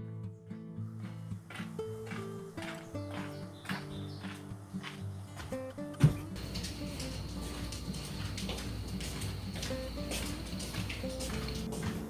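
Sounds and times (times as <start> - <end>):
soft steady beat: 6.4 - 12.0.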